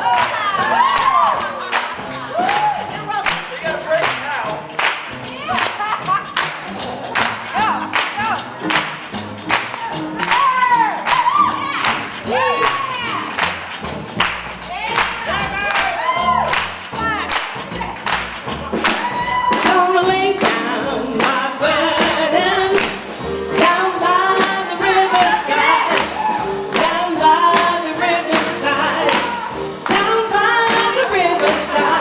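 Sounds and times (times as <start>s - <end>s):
live gospel band playing: 0.0s - 32.0s
steady drum hits: 16.3s - 32.0s.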